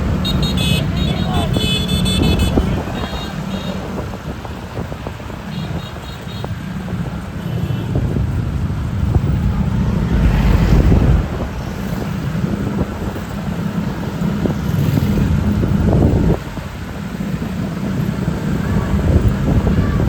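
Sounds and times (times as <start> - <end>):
road traffic rumble: 0.0 - 20.0
wind buffeting microphone: 0.9 - 20.0.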